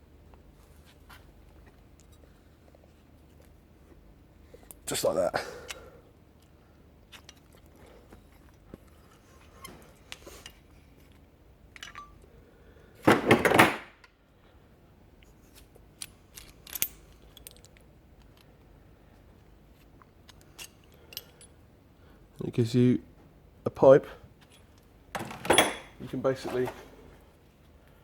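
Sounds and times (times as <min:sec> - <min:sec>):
small metallic clinks and clicks: 0:11.8 - 0:12.3, 0:15.5 - 0:18.5, 0:20.3 - 0:21.6.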